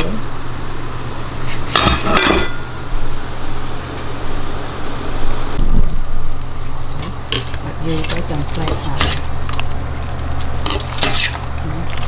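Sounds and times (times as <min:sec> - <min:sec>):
steady low hum: 0:00.0 - 0:12.0
kitchenware clinking: 0:01.7 - 0:02.8, 0:06.8 - 0:09.6.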